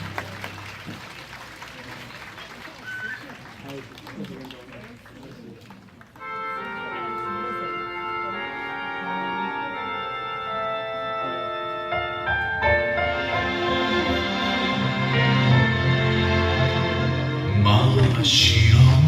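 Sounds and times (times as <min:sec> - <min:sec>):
sustained keyboard chords: 0:06.2 - 0:19.0.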